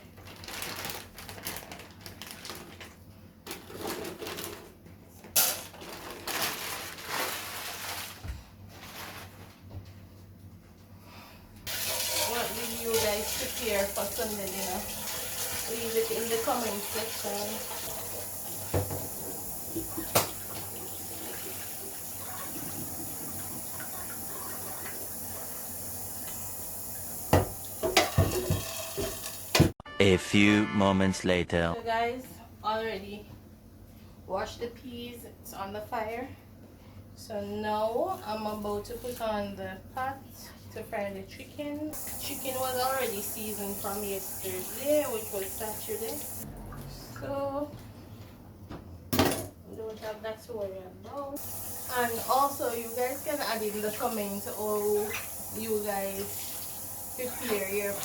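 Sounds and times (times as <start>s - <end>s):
tap water running into sink: 11.7s - 29.7s, 42.0s - 46.9s, 51.4s - 58.0s
cookware clattering and knocking: 27.4s - 29.7s.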